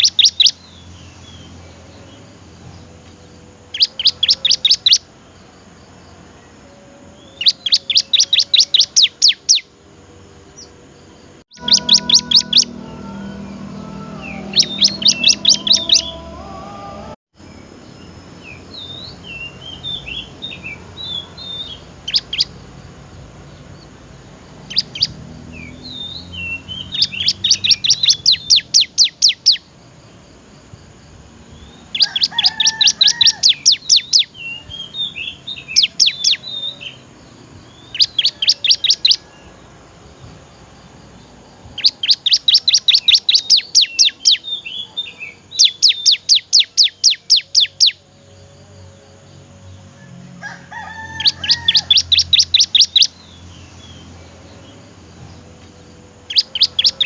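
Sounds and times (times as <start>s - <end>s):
bird warbling twitters: 0.0s - 1.6s, 3.7s - 5.0s, 7.4s - 9.6s, 11.5s - 16.3s, 24.7s - 29.6s, 31.9s - 36.5s, 37.8s - 39.2s, 41.8s - 44.4s, 45.6s - 48.0s, 51.2s - 54.0s, 56.3s - 57.0s
bird singing high chip notes: 0.0s - 5.1s, 6.4s - 29.7s, 31.5s - 39.3s, 41.8s - 50.0s, 51.2s - 57.0s.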